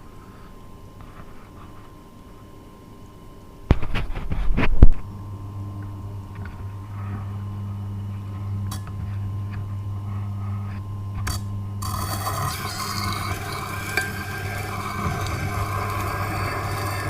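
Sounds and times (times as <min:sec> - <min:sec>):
sharpening machine motor humming: 0:10.5 - 0:17.0.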